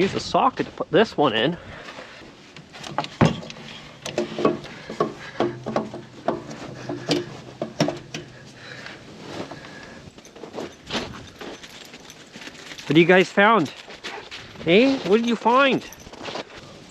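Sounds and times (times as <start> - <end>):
hand tools clinking on metal: 2.9 - 8.9, 9.6 - 14.0, 14.7 - 16.6.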